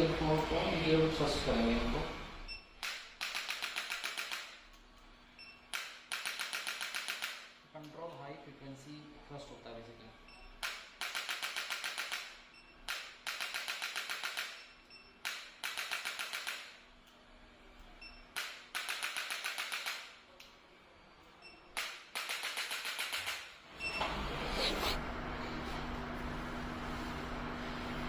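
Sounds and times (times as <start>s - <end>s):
adjusting instrument rapid clicking: 2.8s - 4.5s, 5.7s - 7.5s, 10.6s - 12.3s, 12.9s - 14.6s, 15.2s - 16.7s, 18.4s - 20.1s.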